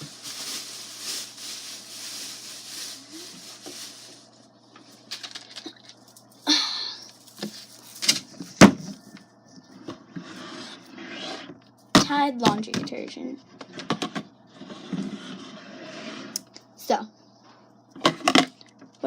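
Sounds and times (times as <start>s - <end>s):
soft rustle: 0.0s - 4.3s.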